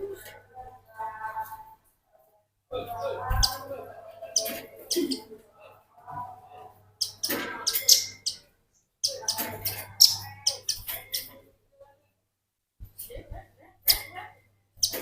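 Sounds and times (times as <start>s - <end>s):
bird singing sharp high chips: 7.0s - 8.4s.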